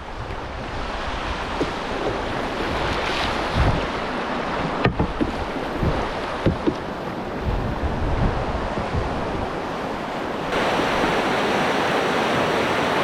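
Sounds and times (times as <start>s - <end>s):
water rushing in river rapid: 0.0s - 13.0s
wind buffeting microphone: 0.0s - 13.0s
low thumps: 4.6s - 7.7s.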